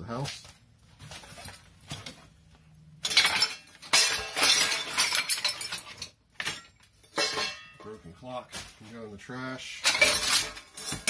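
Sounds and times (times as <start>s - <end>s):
glass and ceramics clinking: 3.0s - 7.8s.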